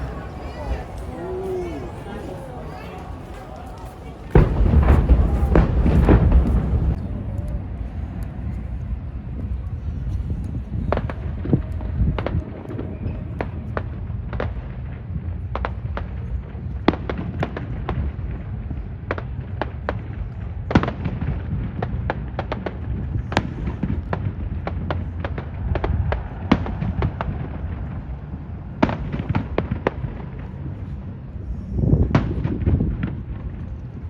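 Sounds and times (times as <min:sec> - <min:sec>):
fireworks rumbling bursts: 0:00.0 - 0:34.0
fireworks cracks and pops: 0:00.2 - 0:09.7.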